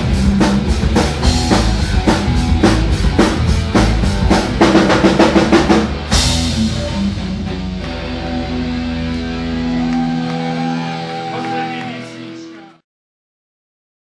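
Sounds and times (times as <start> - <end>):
drum fill: 0.0 - 9.8
guitar chord ringing: 6.0 - 11.2.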